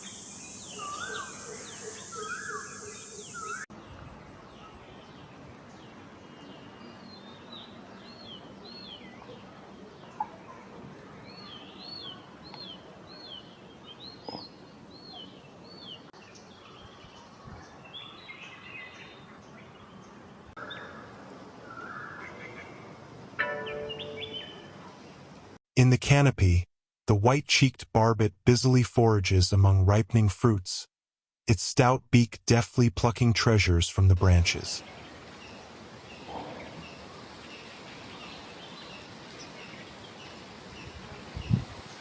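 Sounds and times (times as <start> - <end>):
high insect buzz: 0.0 - 3.4
other bird calls: 0.0 - 3.6.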